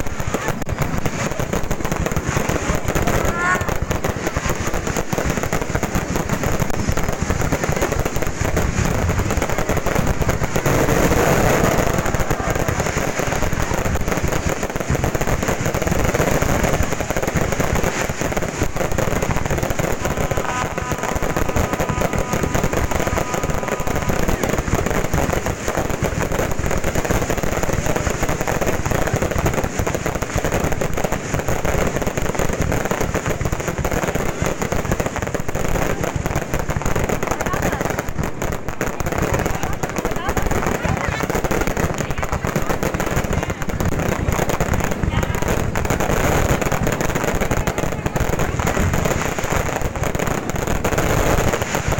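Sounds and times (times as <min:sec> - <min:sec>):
fireworks crackles and bangs: 0:00.0 - 0:51.9.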